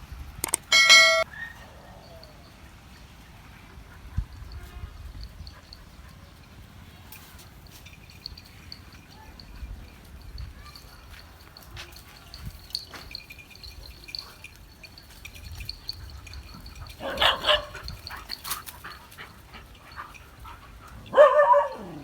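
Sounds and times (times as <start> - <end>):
dogs barking: 16.2 - 22.0.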